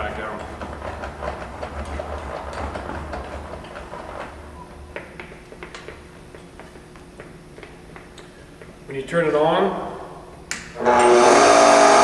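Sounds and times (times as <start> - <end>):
height adjuster gears rattling: 0.0 - 4.4.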